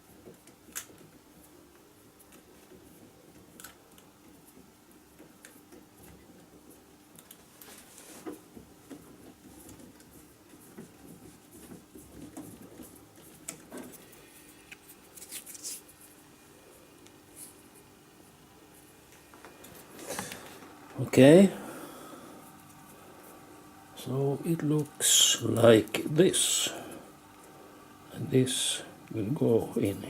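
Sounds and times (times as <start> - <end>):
low steady hum: 6.1 - 30.0.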